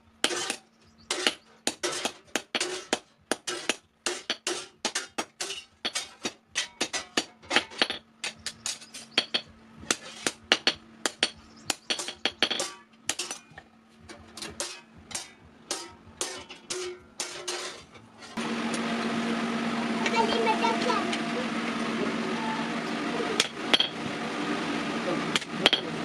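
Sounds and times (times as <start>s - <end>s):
hammer striking steel on anvil: 0.2s - 18.0s, 23.4s - 24.1s, 25.3s - 26.0s.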